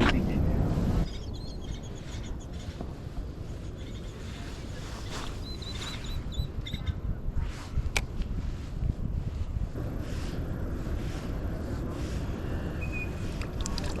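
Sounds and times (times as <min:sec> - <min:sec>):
wind rumble on microphone: 0:00.0 - 0:14.0
faint bird chirps: 0:01.0 - 0:02.8, 0:03.6 - 0:07.0, 0:12.8 - 0:13.2.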